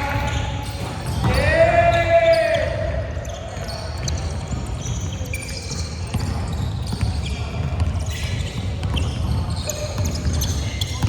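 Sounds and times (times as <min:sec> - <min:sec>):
sneakers squeaking: 0:00.0 - 0:11.0
basketball dribbling: 0:06.1 - 0:11.0.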